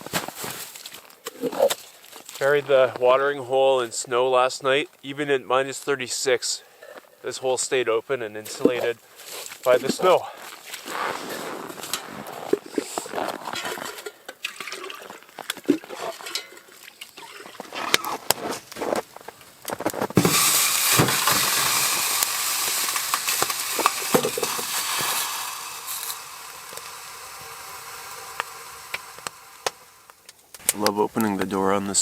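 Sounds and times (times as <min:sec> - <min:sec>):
water rushing into container: 0:12.5 - 0:18.4, 0:20.1 - 0:30.2.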